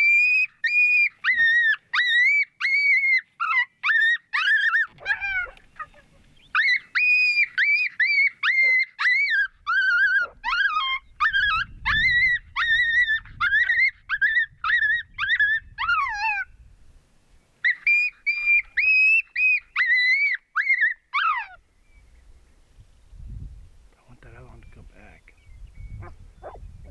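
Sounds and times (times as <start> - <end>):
dog yipping: 0.0 - 16.5, 17.6 - 21.6, 26.0 - 26.6.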